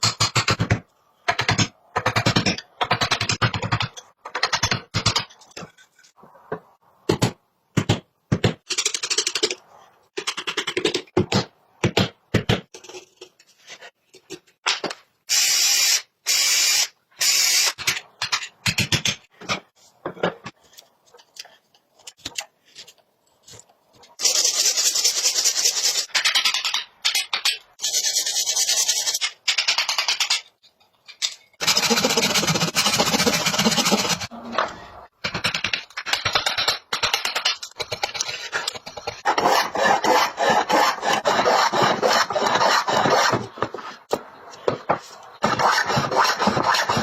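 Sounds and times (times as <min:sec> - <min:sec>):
hand tool rasping across wood: 0:31.6 - 0:34.3, 0:37.8 - 0:43.8, 0:45.4 - 0:47.0.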